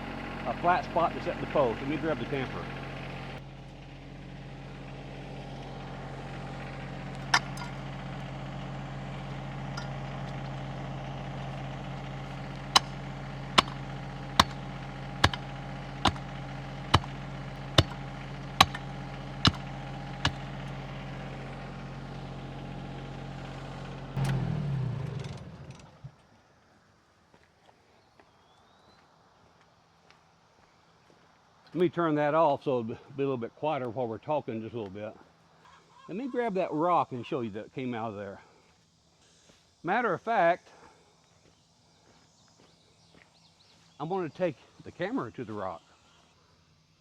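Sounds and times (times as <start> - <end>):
diesel engine idling: 0.0 - 26.1
hand tamper striking ground: 5.5 - 21.4.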